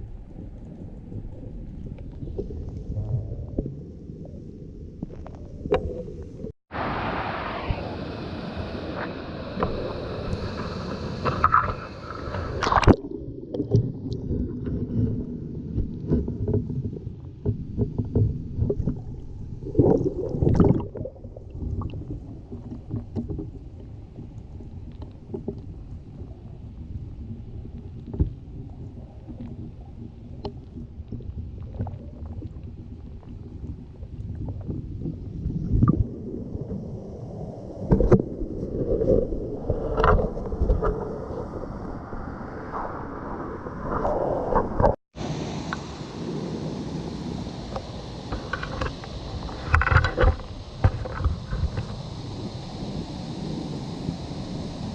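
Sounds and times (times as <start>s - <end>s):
muffled underwater water rumble: 0.0s - 54.9s
water surface and air: 0.0s - 54.9s
underwater knocks and thuds: 13.6s - 23.6s, 37.9s - 38.3s, 49.6s - 51.9s.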